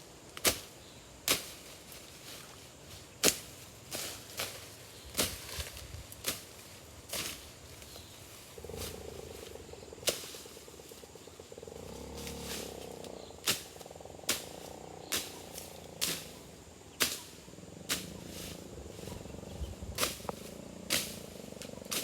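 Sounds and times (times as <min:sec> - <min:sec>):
animal buzzing pulsed call: 0:11.6 - 0:22.0.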